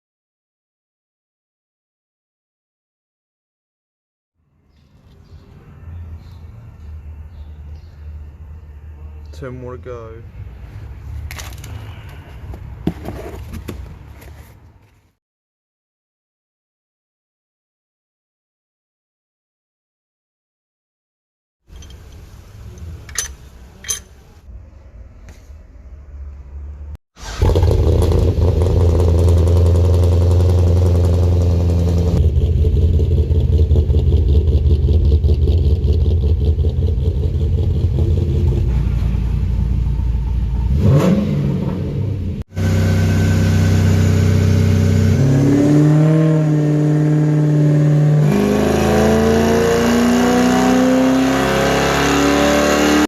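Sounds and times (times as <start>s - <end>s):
car engine revving: 27.2s - 53.0s.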